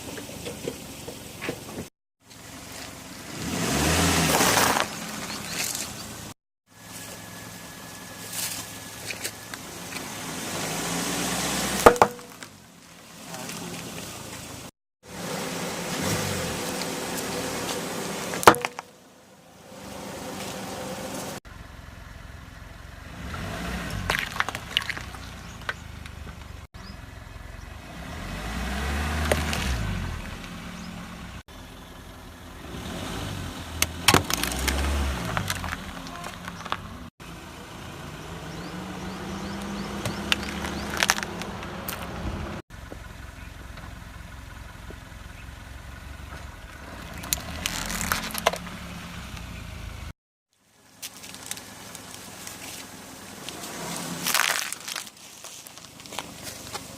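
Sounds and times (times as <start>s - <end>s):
objects cracking under tyres: 3.8s - 6.4s, 8.2s - 10.1s, 11.7s - 14.5s, 16.6s - 19.0s, 23.3s - 26.7s, 29.0s - 30.6s, 33.8s - 37.1s, 39.5s - 42.2s, 46.3s - 49.5s, 50.9s - 56.9s
car passing: 13.1s - 21.4s, 26.9s - 31.4s.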